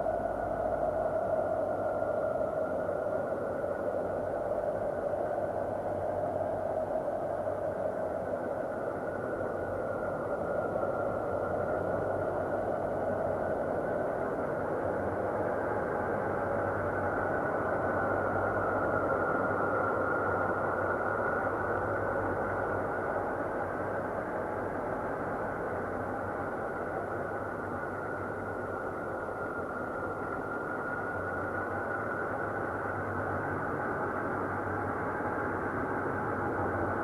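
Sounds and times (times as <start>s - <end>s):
dense noisy drone: 0.0s - 37.0s.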